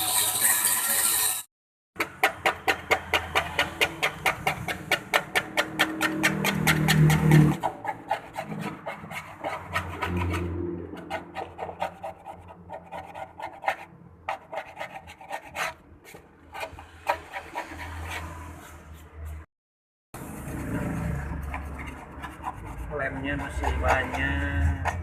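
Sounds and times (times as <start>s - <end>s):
hand scraping roof panel: 2.0s - 18.4s.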